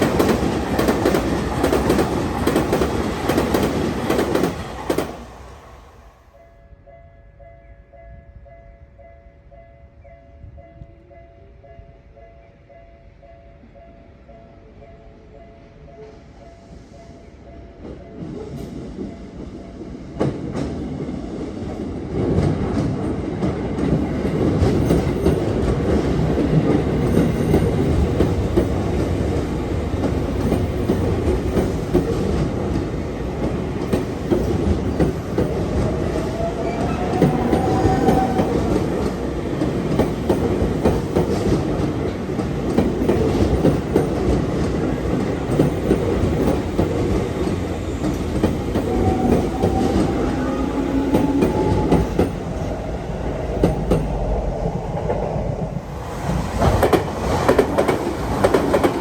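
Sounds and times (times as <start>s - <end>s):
electric train rumbling past: 0.0s - 59.0s.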